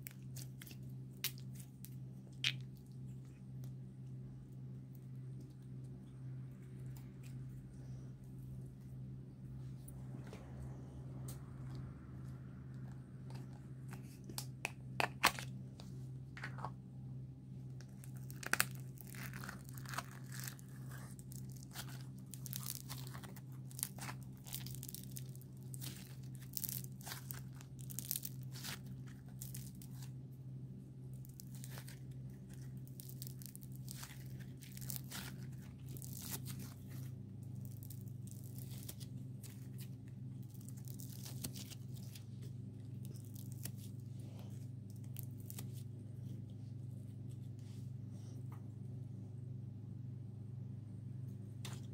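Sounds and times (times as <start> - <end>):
steady low hum: 0.0 - 51.9
slime squelching and popping: 17.8 - 30.1, 31.1 - 42.2.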